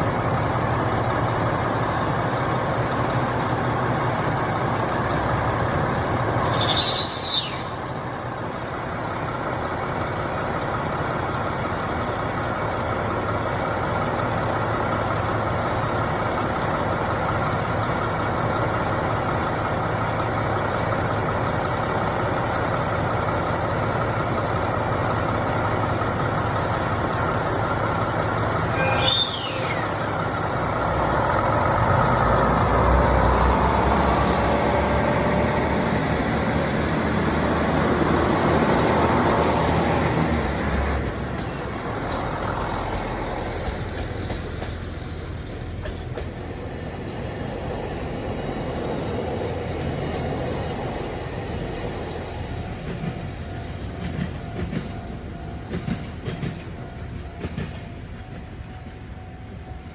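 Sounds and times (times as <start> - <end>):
engine idling: 0.0 - 59.9
high squeal: 6.4 - 7.9, 28.7 - 30.2.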